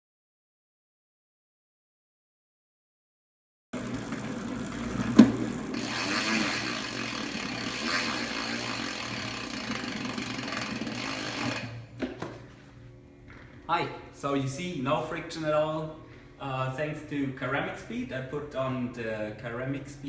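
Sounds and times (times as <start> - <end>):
bicycle drivetrain spinning: 3.8 - 12.5.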